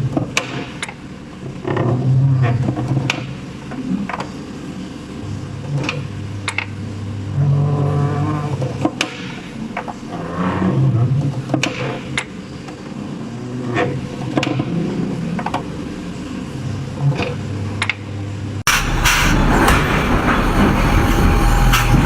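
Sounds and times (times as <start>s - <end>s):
factory machinery humming: 14.8s - 22.0s
rapid machine clattering: 18.7s - 22.0s
sharp clicks and knocks: 18.7s - 22.0s.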